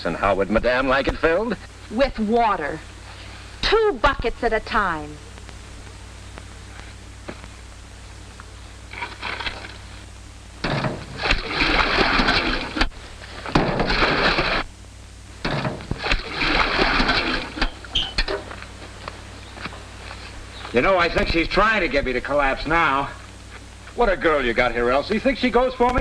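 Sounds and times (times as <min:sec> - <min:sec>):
water pouring into tank: 0:11.1 - 0:12.8, 0:13.7 - 0:14.7, 0:15.9 - 0:17.8.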